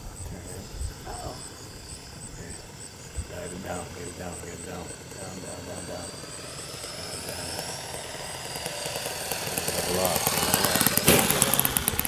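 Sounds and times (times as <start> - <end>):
model plane engine: 0.0 - 12.0
sharp thump: 11.0 - 11.6.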